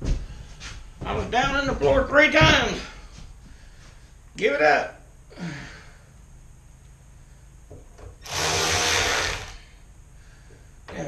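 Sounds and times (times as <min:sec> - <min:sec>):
power drill driving screw: 0:08.2 - 0:09.6.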